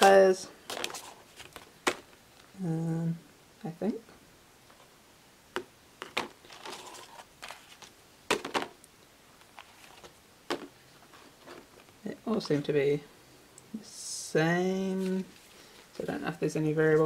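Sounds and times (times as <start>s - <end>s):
cardboard rustling: 0.0s - 2.2s, 6.0s - 8.8s, 9.4s - 12.7s.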